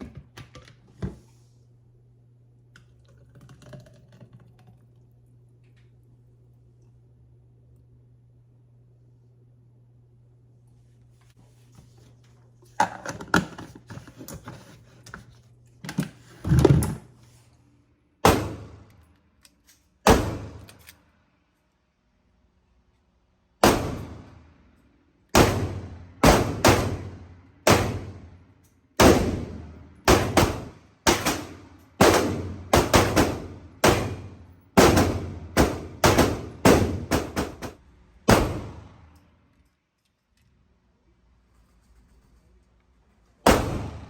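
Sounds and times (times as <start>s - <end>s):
loud sharp bangs: 25.4s - 28.3s, 29.0s - 39.1s, 43.4s - 44.0s.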